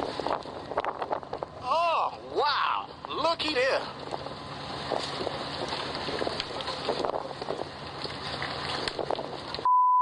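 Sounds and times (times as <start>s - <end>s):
wind and rain on microphone: 0.0s - 9.7s
high-pitched beep: 9.6s - 10.0s.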